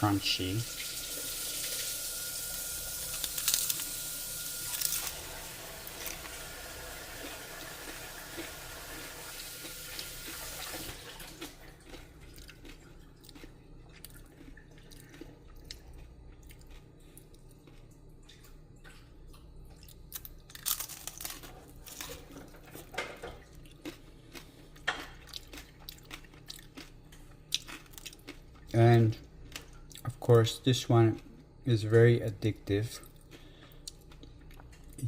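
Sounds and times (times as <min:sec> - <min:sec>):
crunchy food being bitten and chewed: 0:02.5 - 0:35.0.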